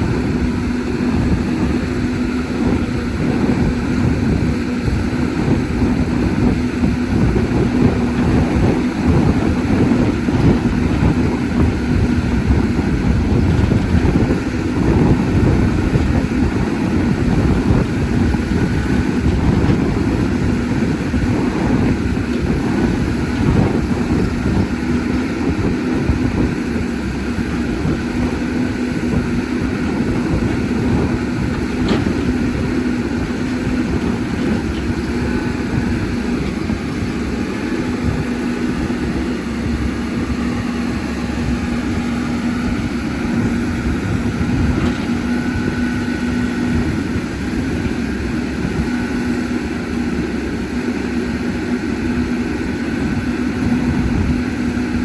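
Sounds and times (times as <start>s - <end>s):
excavator diesel engine droning: 0.0s - 55.0s.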